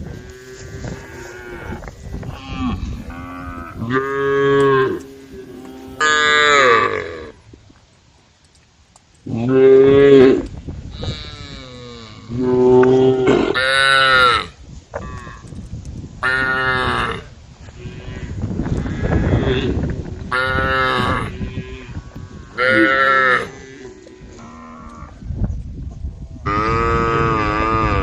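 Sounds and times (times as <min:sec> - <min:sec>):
cows mooing: 0:00.0 - 0:07.4, 0:20.4 - 0:25.2.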